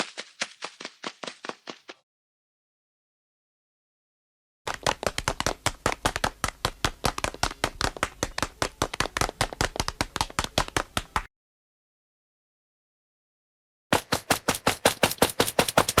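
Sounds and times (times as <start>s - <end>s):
cartoon running footsteps: 0.0s - 2.0s, 4.7s - 11.3s, 13.9s - 16.0s.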